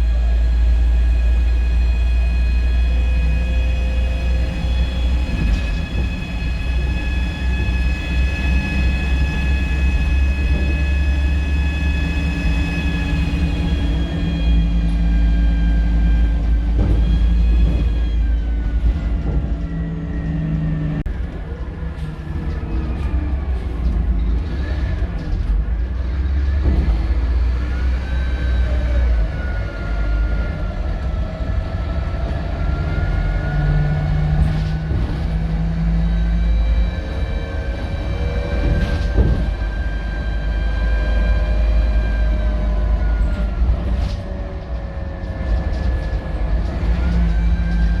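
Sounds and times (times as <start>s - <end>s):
turbo whine: 0.0s - 21.6s
bus diesel engine rumbling: 0.0s - 48.0s.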